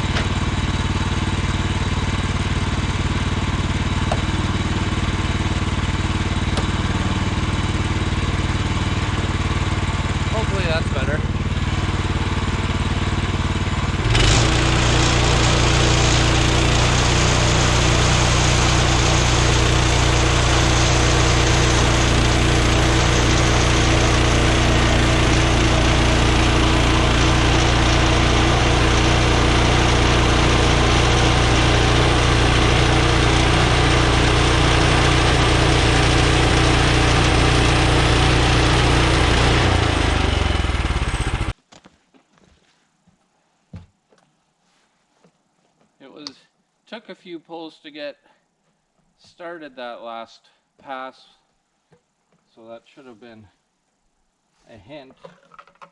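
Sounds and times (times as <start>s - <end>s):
small gas engine running: 0.0s - 41.6s.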